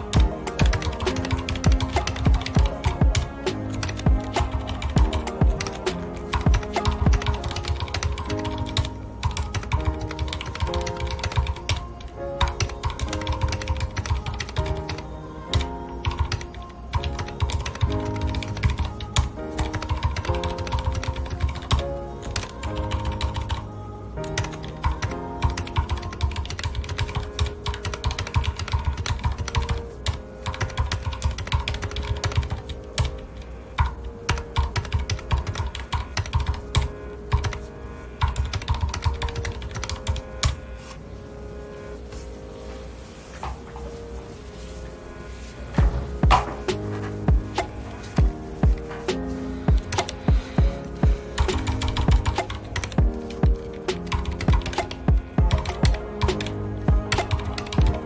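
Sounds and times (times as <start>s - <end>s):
soft background music: 0.0s - 58.0s
typing on mechanical keyboard: 12.4s - 17.9s, 24.3s - 29.8s, 30.4s - 33.1s, 33.8s - 37.6s, 38.2s - 40.6s, 51.4s - 56.5s.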